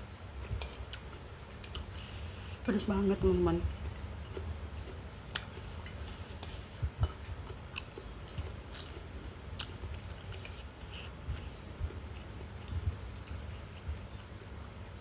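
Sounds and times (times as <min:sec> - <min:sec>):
steady low hum: 0:00.0 - 0:15.0
chewing crunchy food: 0:03.8 - 0:14.7.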